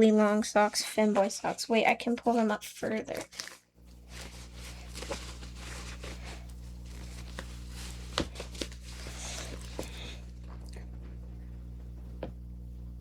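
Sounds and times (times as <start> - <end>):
low electrical hum: 0.0 - 13.0
fabric rustling and scuffing: 3.8 - 10.4.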